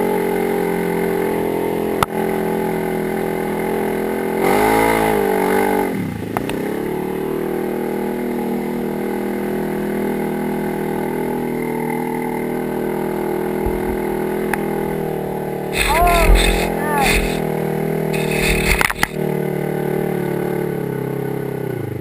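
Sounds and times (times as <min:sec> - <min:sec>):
engine running and revving: 0:02.4 - 0:13.2, 0:15.8 - 0:17.4, 0:18.2 - 0:22.0.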